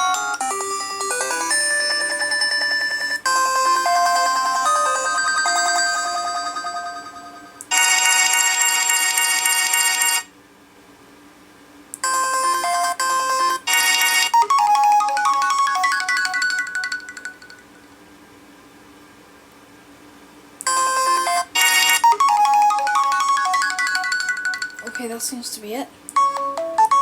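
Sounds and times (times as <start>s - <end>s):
buzzing phone ring: 0.0s - 10.3s, 12.0s - 17.7s, 20.7s - 25.3s
phone ringtone melodies: 0.0s - 10.3s, 12.0s - 17.8s, 20.7s - 25.3s, 26.2s - 27.0s.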